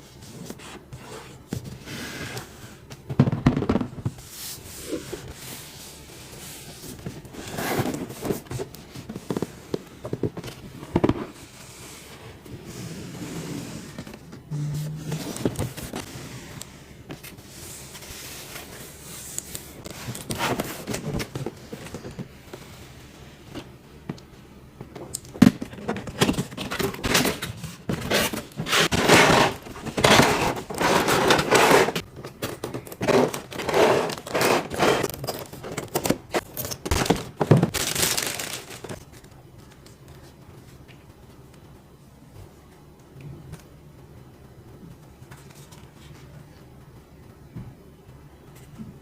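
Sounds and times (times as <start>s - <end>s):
packaging tearing and rustling: 26.1s - 39.3s.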